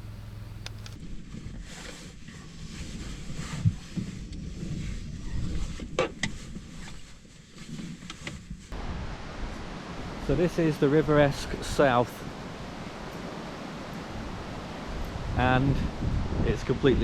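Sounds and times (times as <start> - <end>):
wind buffeting microphone: 14.0 - 17.0.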